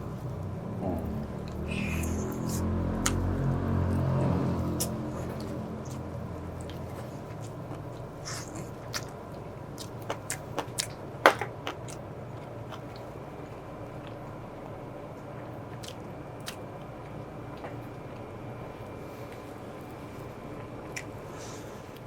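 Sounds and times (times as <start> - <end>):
person chewing: 1.0 - 13.2, 15.7 - 18.3.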